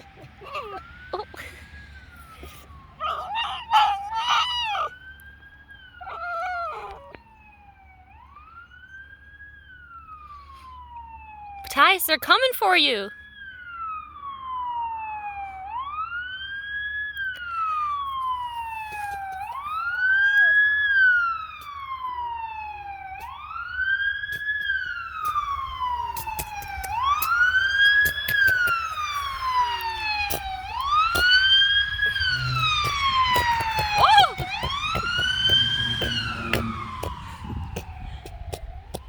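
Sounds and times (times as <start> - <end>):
police siren wailing: 0.0 - 39.0
sharp clicks: 24.3 - 31.4.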